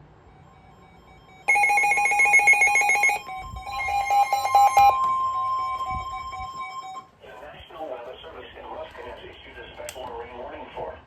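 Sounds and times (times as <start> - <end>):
pulsing beeps: 0.2 - 7.0
steady high alert tone: 0.2 - 7.1
electronic data warble: 0.3 - 7.0.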